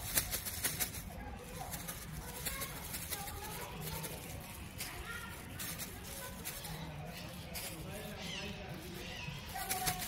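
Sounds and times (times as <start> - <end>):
faint background chatter: 0.0 - 10.0.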